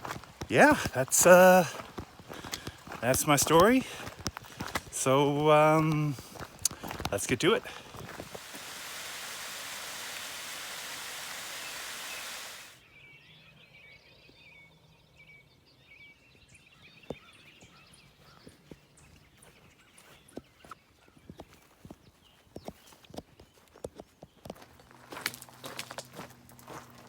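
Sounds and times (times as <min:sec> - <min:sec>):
small birds chirping: 0:00.0 - 0:08.4, 0:09.4 - 0:25.2
footsteps on a trail: 0:00.0 - 0:09.2, 0:16.8 - 0:27.0
steady rushing noise: 0:08.0 - 0:12.8.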